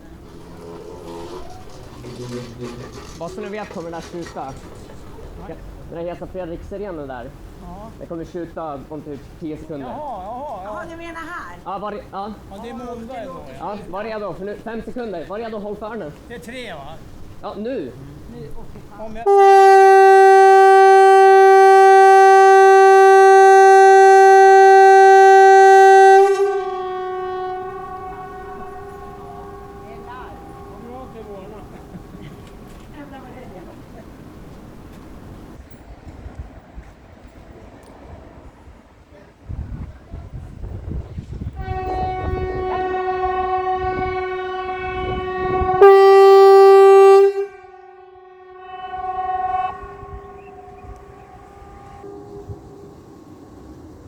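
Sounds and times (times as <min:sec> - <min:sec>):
pneumatic air horn blast: 0:19.3 - 0:32.7, 0:41.6 - 0:53.5.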